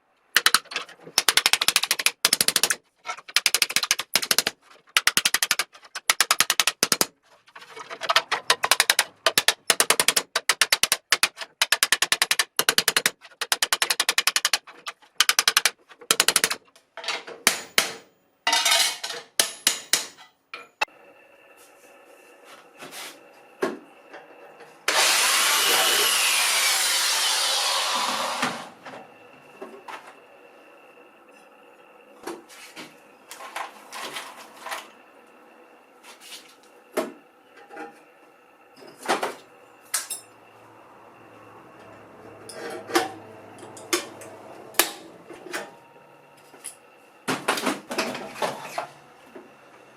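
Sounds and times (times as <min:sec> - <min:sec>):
rapid mechanical clattering: 0:00.3 - 0:16.7.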